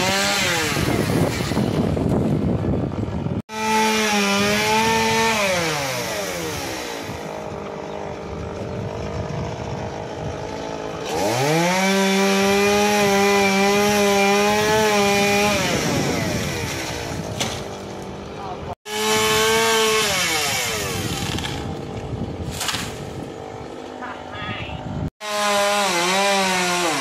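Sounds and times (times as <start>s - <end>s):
chainsaw engine revving and idling: 0.0s - 22.3s, 25.2s - 27.0s.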